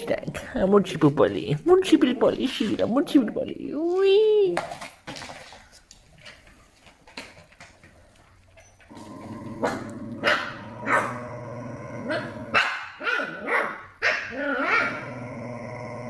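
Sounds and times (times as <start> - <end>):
dog barking and growling: 8.9 - 16.0.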